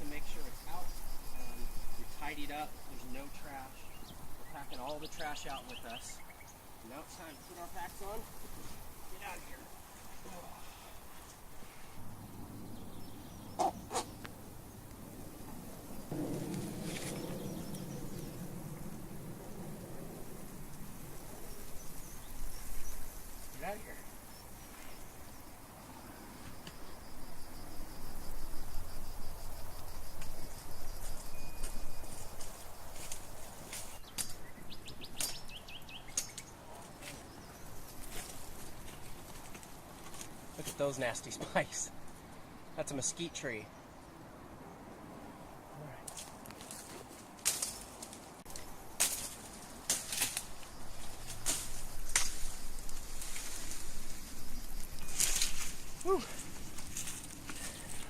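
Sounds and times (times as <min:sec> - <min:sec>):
insect chirring: 0:00.0 - 0:11.6, 0:12.2 - 0:42.1, 0:48.5 - 0:58.0
low rustling footsteps: 0:00.0 - 0:42.5, 0:46.0 - 0:58.0
footsteps crunching on gritty trail: 0:36.9 - 0:40.9, 0:46.1 - 0:58.0.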